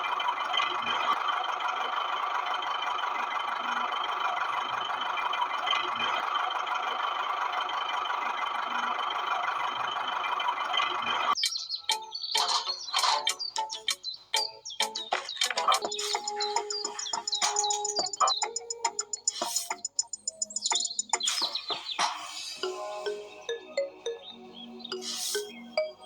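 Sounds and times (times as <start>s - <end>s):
quick chirping sounds: 11.4s - 26.0s.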